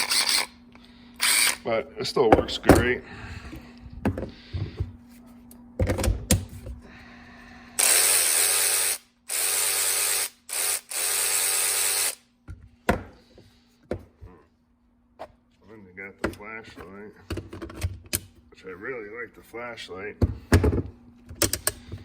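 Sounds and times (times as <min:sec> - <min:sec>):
cordless power tool motor whir: 0:00.0 - 0:00.6, 0:01.2 - 0:01.6, 0:07.8 - 0:12.2.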